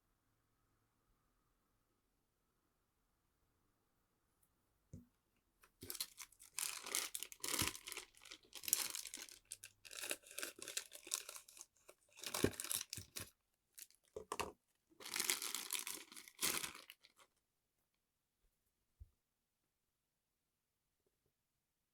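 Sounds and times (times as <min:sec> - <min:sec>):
plastic wrapping crinkling: 0:05.8 - 0:14.4, 0:15.0 - 0:17.3.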